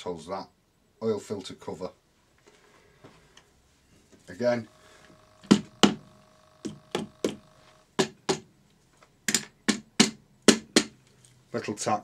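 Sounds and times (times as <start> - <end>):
rubber mallet knocking on metal: 5.4 - 6.0, 6.6 - 8.5, 9.3 - 11.0.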